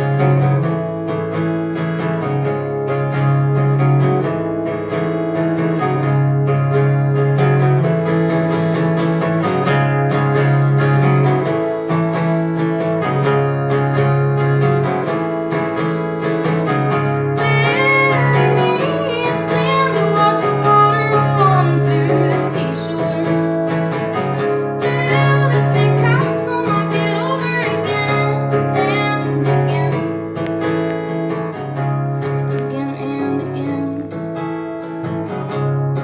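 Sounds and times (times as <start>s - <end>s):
acoustic guitar strumming: 0.0s - 36.0s
woman singing: 16.4s - 30.8s, 32.3s - 34.6s.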